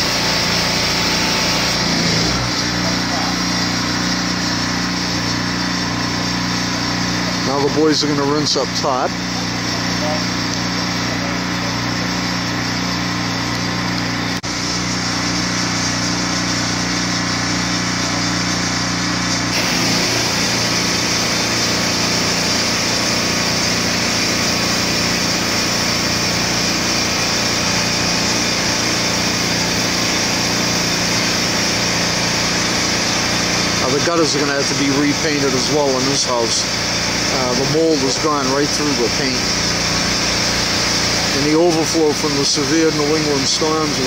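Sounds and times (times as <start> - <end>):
water spray hissing: 0.0 - 7.7, 19.5 - 44.0
small engine hum: 0.0 - 44.0.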